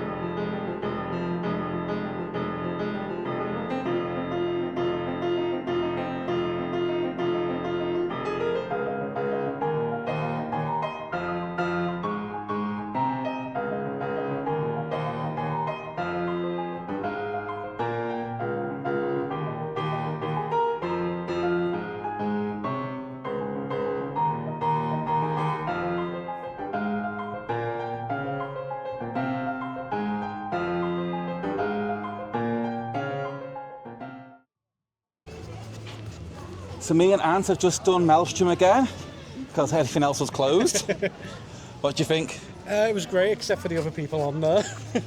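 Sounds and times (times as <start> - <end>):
piano music: 0.0 - 34.4.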